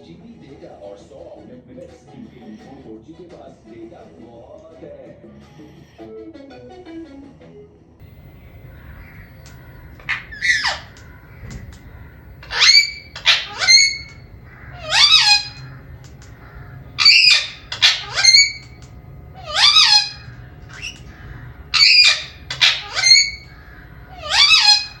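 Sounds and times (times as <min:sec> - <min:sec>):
cockatiel whistling calls: 0:08.2 - 0:25.0.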